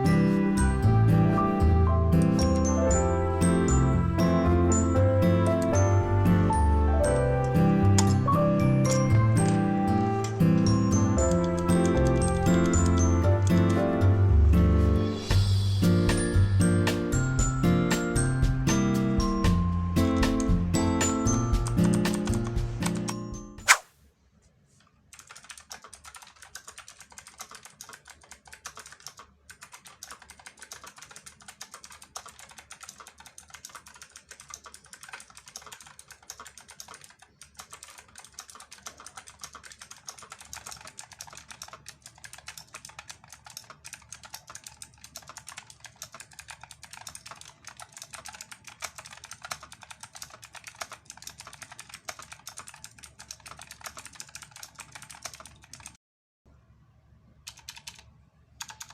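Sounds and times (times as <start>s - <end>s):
clicky mechanical keyboard typing: 7.3s - 14.1s, 20.1s - 23.2s, 25.1s - 56.0s, 57.4s - 58.9s.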